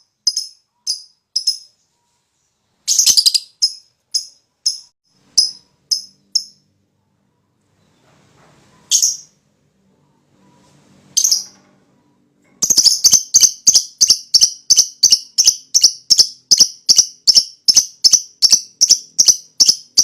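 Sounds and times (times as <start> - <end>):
bird shrill chirps: 2.9 - 6.7.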